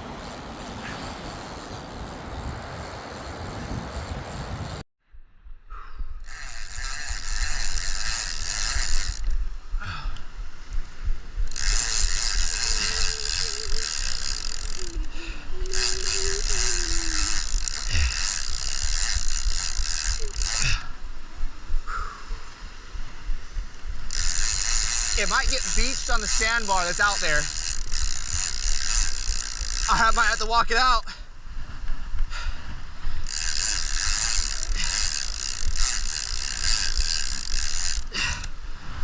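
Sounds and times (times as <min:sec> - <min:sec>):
wind: 0:00.0 - 0:39.0
fishing reel ratcheting: 0:00.2 - 0:04.8, 0:06.2 - 0:09.4, 0:11.4 - 0:20.9, 0:24.0 - 0:31.0, 0:33.2 - 0:38.5.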